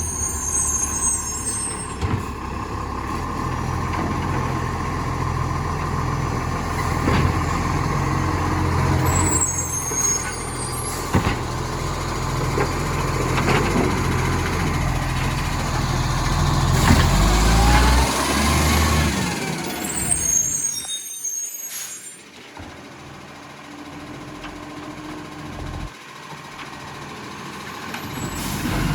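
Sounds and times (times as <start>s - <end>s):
brief high squeals: 0.0s - 2.0s, 9.0s - 11.1s, 19.6s - 22.4s
diesel engine with leaking exhaust: 0.0s - 28.9s.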